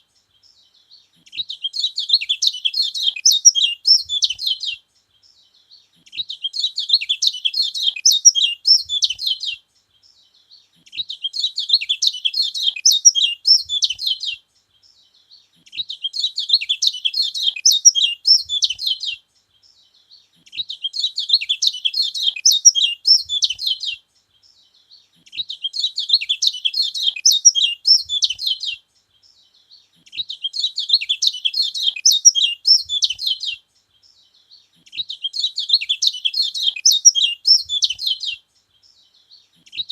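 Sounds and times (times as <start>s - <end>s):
bird twittering song: 0.0s - 39.9s.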